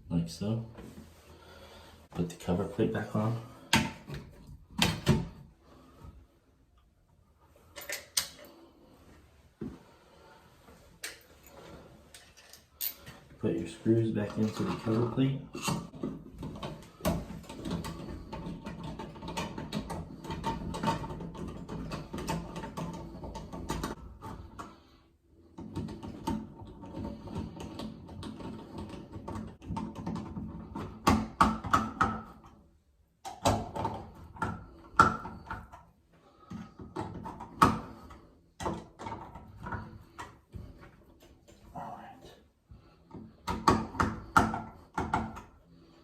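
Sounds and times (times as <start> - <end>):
hand tools and metal trim knocking: 43.0 - 45.6.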